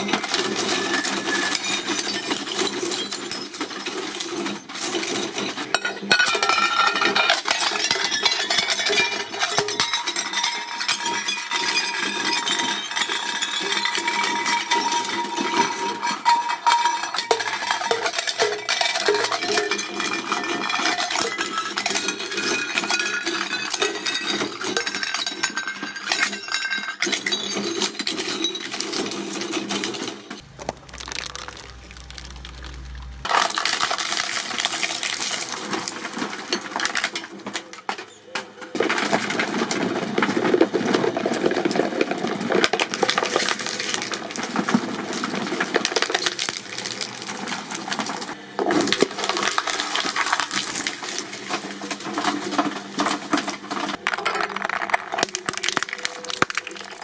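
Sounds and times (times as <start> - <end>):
shredding machine grinding: 30.4 - 36.4.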